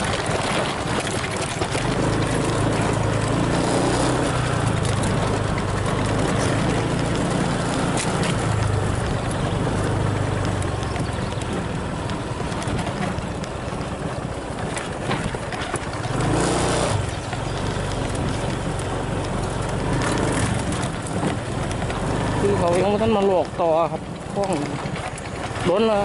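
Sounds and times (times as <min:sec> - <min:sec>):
wind noise on microphone: 0:00.0 - 0:05.0
small vehicle engine running: 0:00.0 - 0:26.0.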